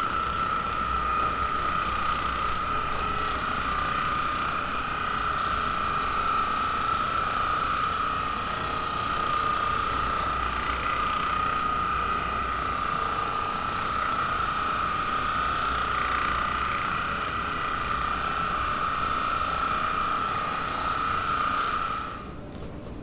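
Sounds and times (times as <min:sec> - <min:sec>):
massage gun motor whine: 0:00.0 - 0:23.0.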